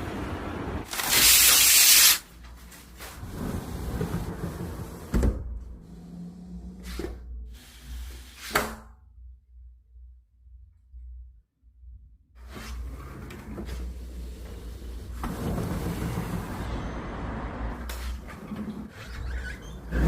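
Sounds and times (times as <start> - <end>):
vehicle passing rush: 15.7 - 18.4.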